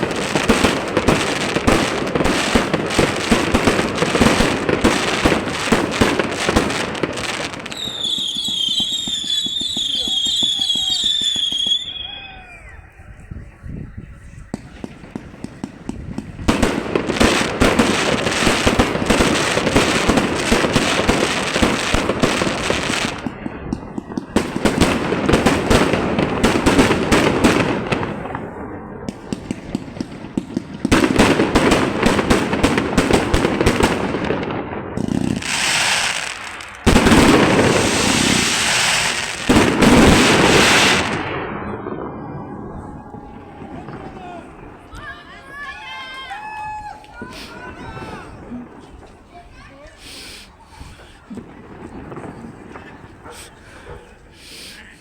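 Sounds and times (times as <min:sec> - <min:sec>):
fireworks hissing: 0:00.0 - 0:12.2, 0:35.0 - 0:41.3, 0:42.2 - 0:55.0
fireworks bangs and crackling: 0:00.0 - 0:55.0.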